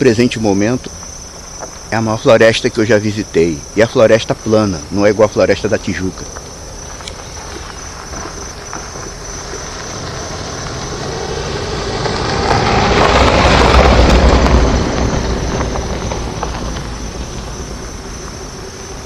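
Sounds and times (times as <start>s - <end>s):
insects chirring: 0.0s - 19.0s
vehicle passing: 7.9s - 19.0s.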